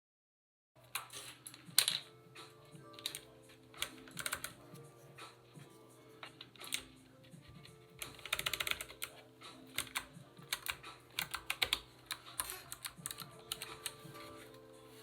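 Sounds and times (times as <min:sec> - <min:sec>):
clicky mechanical keyboard typing: 0:02.9 - 0:04.6, 0:06.2 - 0:07.0, 0:07.6 - 0:14.3.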